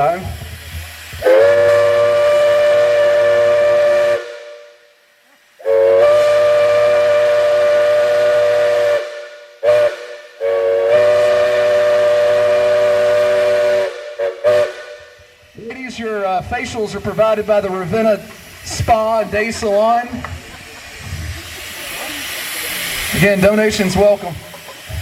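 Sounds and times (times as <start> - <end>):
steam hissing: 0.0 - 25.0
steam whistle chord: 1.2 - 15.6.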